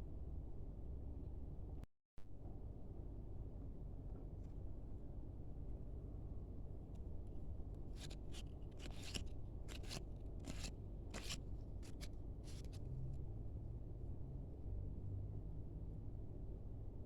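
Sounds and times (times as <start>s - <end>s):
card wrapper rustling: 8.0s - 12.8s.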